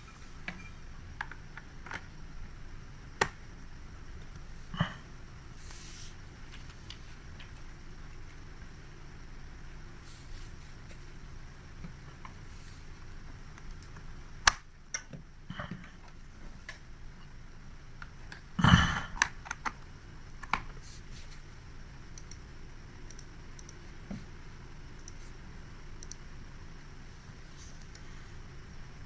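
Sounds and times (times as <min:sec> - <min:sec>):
keyboard and mouse clicks: 0:22.1 - 0:22.4, 0:23.1 - 0:23.8, 0:25.0 - 0:25.2, 0:26.0 - 0:26.2.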